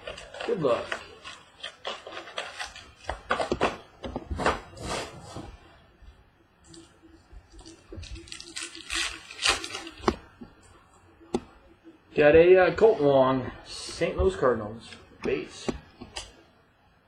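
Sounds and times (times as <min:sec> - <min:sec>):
packaging crinkling and tearing: 0:00.0 - 0:03.5, 0:07.6 - 0:10.2.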